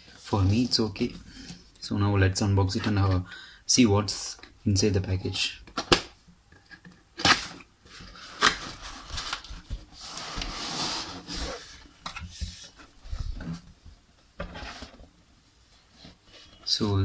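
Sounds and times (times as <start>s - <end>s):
cardboard rustling and scraping: 7.3s - 13.8s, 14.4s - 17.0s.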